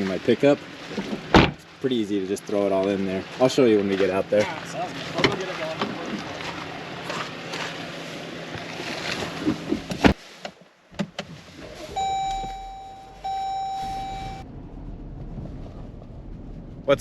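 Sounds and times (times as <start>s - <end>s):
steady outdoor noise: 0.0s - 17.0s
car doors shutting: 0.9s - 1.6s, 10.9s - 14.4s
car electronic warning chime: 11.9s - 14.4s.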